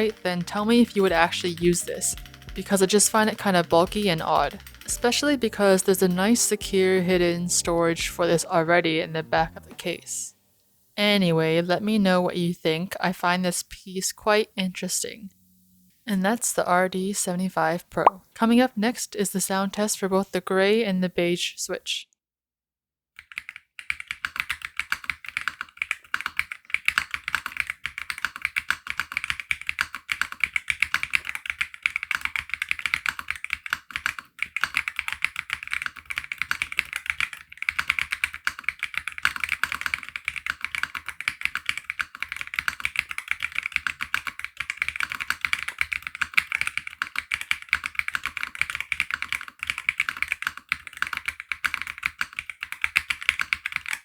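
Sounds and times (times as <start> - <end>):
fast typing on mechanical keyboard: 0.0 - 8.4, 23.2 - 54.0.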